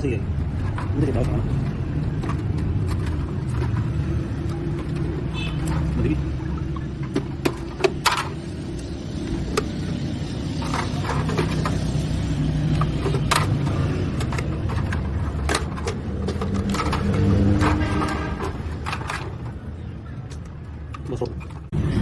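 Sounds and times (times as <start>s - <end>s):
sharp metallic clicks and knocks: 0.0s - 21.8s.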